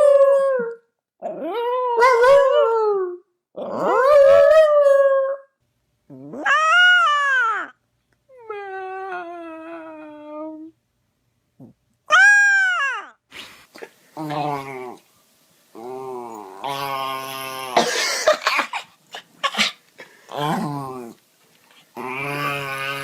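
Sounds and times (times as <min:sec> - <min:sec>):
dog howling: 0:06.2 - 0:07.7, 0:22.0 - 0:23.0.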